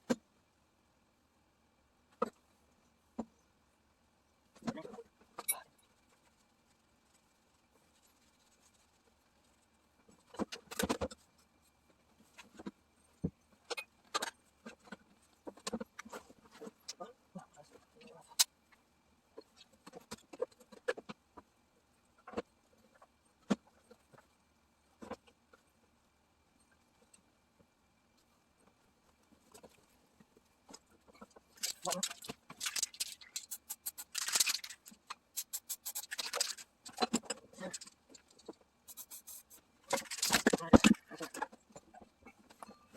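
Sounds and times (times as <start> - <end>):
tools and metal parts clicking: 31.6 - 40.9
short scraping bursts: 32.7 - 34.8, 35.4 - 36.6, 38.9 - 40.3.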